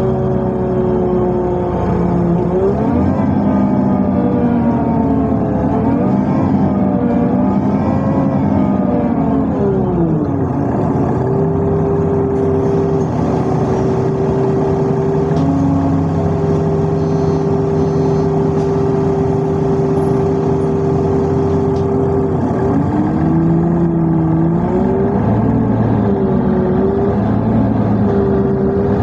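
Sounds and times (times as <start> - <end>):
rumbling running noise: 0.0 - 29.0
vehicle motor hum: 0.0 - 29.0.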